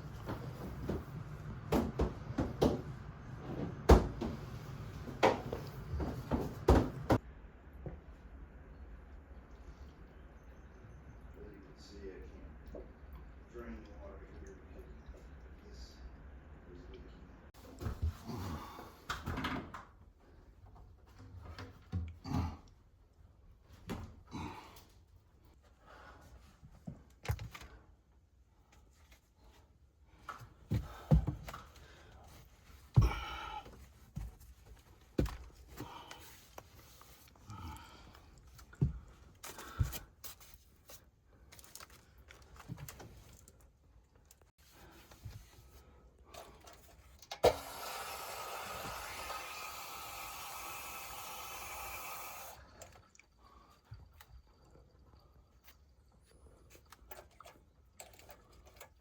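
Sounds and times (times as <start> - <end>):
thumps and knocks: 0.1 - 4.5.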